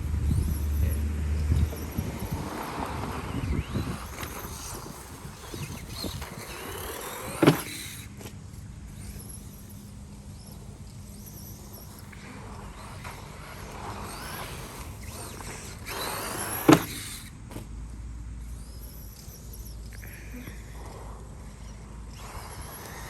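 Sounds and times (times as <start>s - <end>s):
short loud motor bursts: 0.0s - 8.2s, 9.0s - 17.5s, 18.5s - 23.0s
electric rc car motor running: 0.0s - 23.0s.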